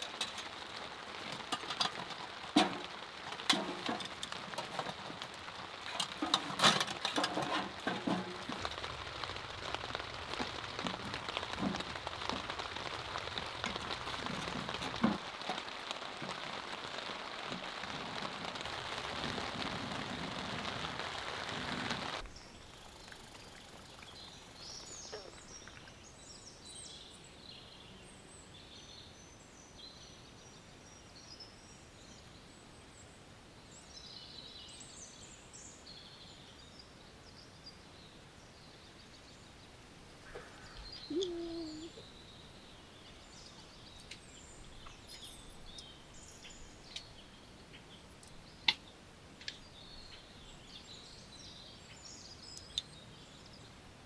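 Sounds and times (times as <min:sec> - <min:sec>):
heavy rain falling: 0:00.0 - 0:25.3, 0:40.1 - 0:42.2
small birds chirping: 0:22.2 - 0:53.8.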